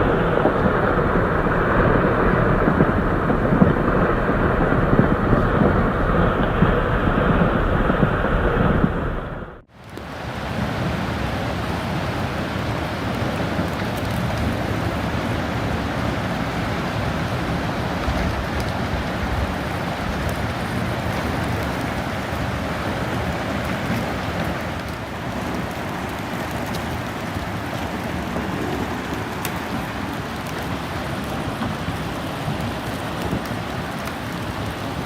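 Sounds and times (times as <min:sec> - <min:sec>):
dull rumble: 0:00.0 - 0:33.6
rushing wind and water: 0:00.0 - 0:35.0.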